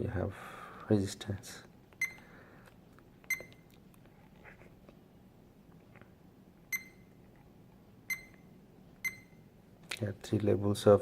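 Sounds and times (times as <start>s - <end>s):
multimeter beeps: 2.0s - 2.3s, 3.3s - 3.7s, 6.7s - 7.2s, 8.1s - 9.5s.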